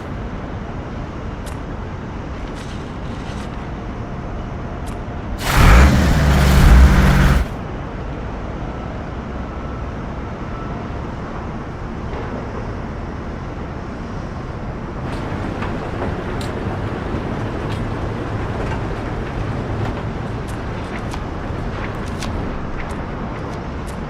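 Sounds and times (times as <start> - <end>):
loud low engine-like drone: 5.4 - 7.6.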